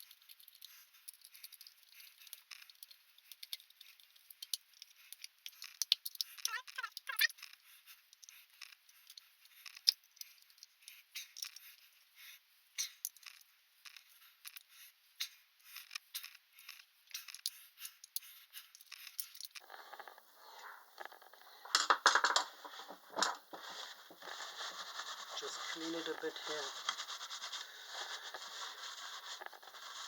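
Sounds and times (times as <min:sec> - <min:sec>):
scraping rustle: 0:19.6 - 0:30.0.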